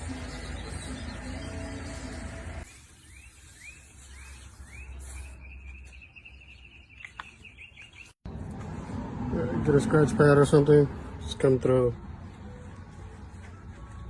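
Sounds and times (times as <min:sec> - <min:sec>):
background music: 0:00.0 - 0:02.6.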